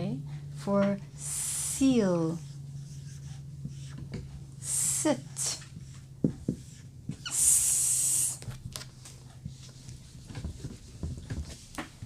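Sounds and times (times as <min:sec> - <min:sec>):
person hissing: 0:04.6 - 0:05.1, 0:07.3 - 0:08.4.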